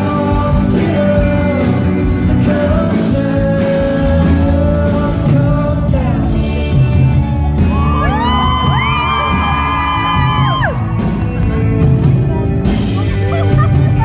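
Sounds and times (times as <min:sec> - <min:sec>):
man singing: 0:00.0 - 0:08.3
live rock band: 0:00.0 - 0:14.0.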